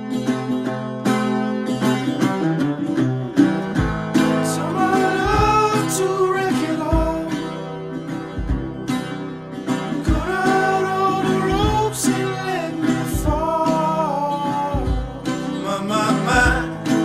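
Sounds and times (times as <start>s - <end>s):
strummed acoustic guitar: 0.0s - 17.0s
person singing: 4.2s - 7.6s, 10.0s - 17.0s.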